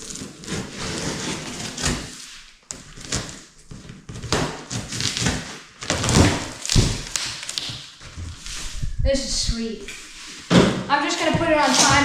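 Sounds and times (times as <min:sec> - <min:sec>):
cardboard box scraping and crinkling: 0:00.0 - 0:02.4, 0:08.0 - 0:08.9, 0:10.0 - 0:12.0.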